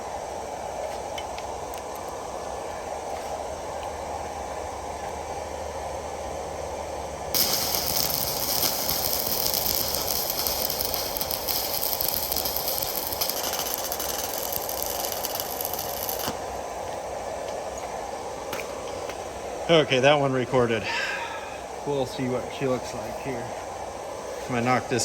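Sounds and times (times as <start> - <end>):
low hum: 7.3 - 16.7
welding arc crackling and hissing: 7.3 - 16.8.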